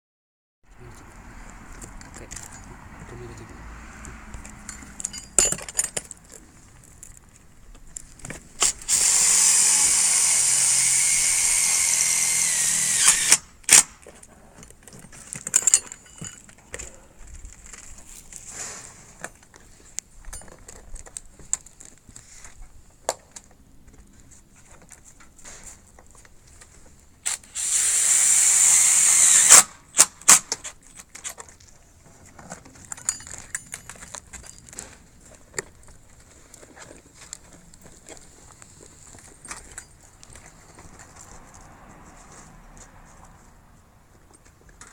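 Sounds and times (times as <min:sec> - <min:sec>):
power tool whining: 0:08.6 - 0:13.4, 0:27.3 - 0:29.7.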